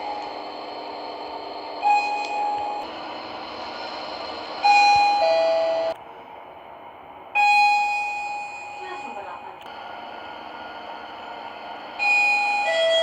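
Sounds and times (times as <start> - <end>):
elevator chime ding: 1.8 - 2.9, 4.6 - 6.0, 7.4 - 9.4, 12.0 - 13.0.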